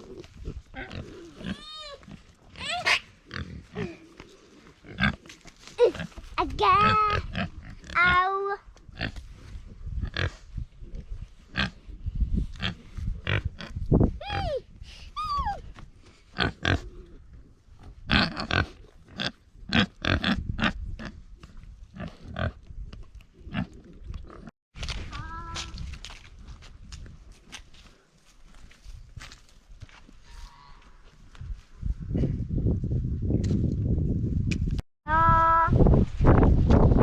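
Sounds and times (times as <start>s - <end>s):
pigs grunting: 0.0s - 6.2s, 16.4s - 17.2s.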